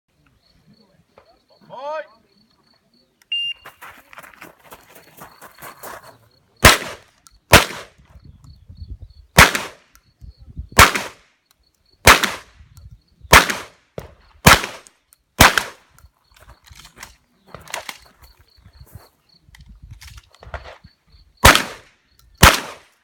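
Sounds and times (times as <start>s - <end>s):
shotgun shots: 6.6s - 8.0s, 9.4s - 9.9s, 10.8s - 11.3s, 12.0s - 12.6s, 13.3s - 15.9s, 21.4s - 23.0s.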